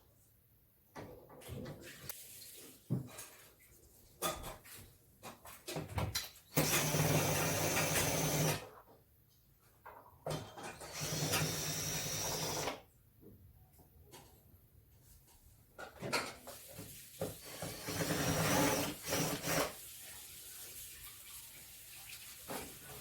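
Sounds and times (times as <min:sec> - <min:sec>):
small power tool motor: 0:06.6 - 0:08.6, 0:10.9 - 0:12.8, 0:17.6 - 0:19.7.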